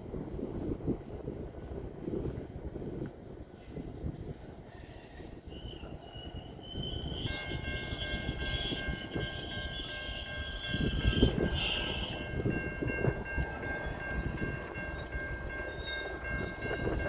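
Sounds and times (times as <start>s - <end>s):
train rumbling over rails: 0.0s - 17.0s
high ringing tone: 7.0s - 17.0s.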